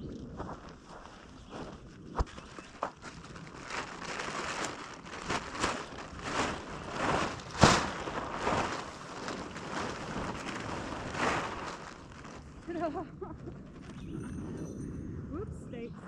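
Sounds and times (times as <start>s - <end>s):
rustling and crunching scuffs: 0.4s - 12.5s.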